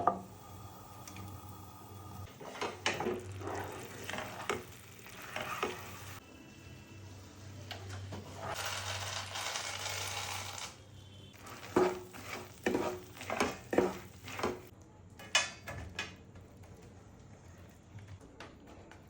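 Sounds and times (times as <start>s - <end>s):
food sizzling in a pan: 0.0s - 10.7s, 11.4s - 14.7s.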